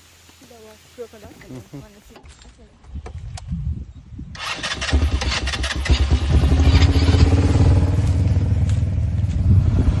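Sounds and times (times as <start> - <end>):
atv engine running: 4.3 - 10.0.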